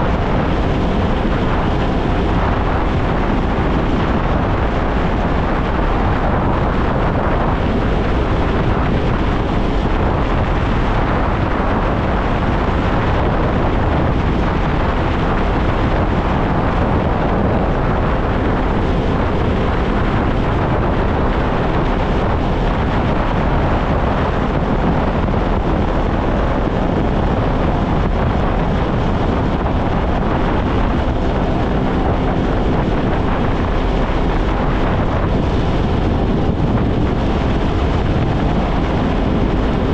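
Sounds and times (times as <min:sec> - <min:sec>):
jet ski engine running: 0:00.0 - 0:39.9
wind noise on microphone: 0:00.0 - 0:39.9.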